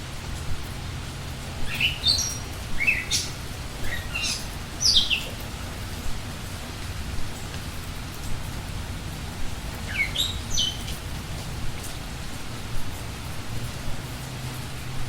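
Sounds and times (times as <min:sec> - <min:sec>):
rain hiss and patter: 0:00.0 - 0:15.0
songbird chirping: 0:01.7 - 0:05.4, 0:09.9 - 0:11.0.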